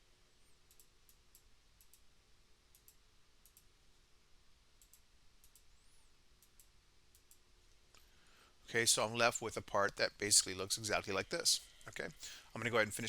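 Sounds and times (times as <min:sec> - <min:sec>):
faint computer mouse clicks: 0:02.7 - 0:03.7, 0:04.8 - 0:05.7.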